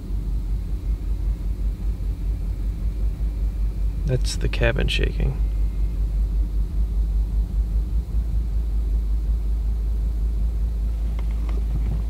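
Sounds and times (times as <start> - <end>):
car engine idling roughly: 3.8 - 12.0.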